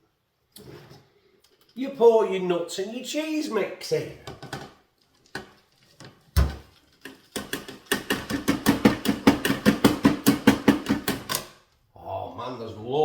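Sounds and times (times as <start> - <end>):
thump: 6.4 - 6.6.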